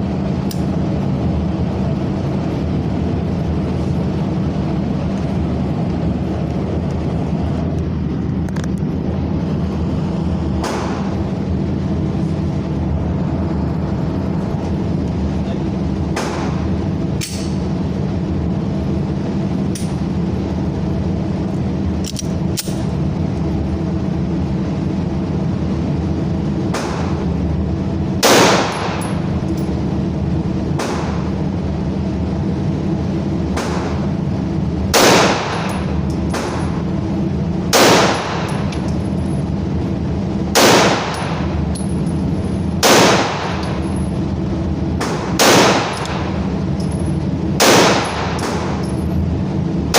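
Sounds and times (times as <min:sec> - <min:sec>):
steady background noise: 0:00.0 - 0:49.9
shotgun shots: 0:10.6 - 0:11.2, 0:28.2 - 0:29.0, 0:30.8 - 0:31.3, 0:34.9 - 0:36.7, 0:37.7 - 0:38.7, 0:40.5 - 0:41.5, 0:42.8 - 0:43.7, 0:45.0 - 0:46.4, 0:47.6 - 0:48.8.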